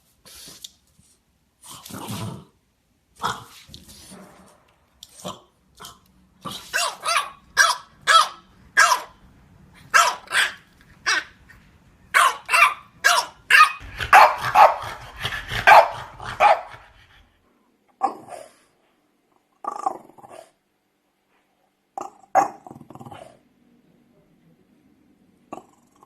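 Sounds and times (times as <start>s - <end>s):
dog growling: 1.6s - 2.6s, 13.8s - 17.3s, 19.5s - 20.6s, 22.0s - 23.4s, 25.5s - 26.0s
dog barking: 6.6s - 9.2s, 9.8s - 11.4s, 12.1s - 16.9s.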